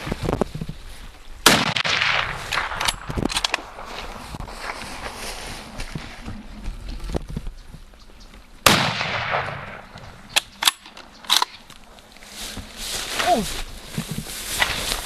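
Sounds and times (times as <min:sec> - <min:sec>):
rifle shot: 0:01.4 - 0:03.9, 0:08.6 - 0:11.5.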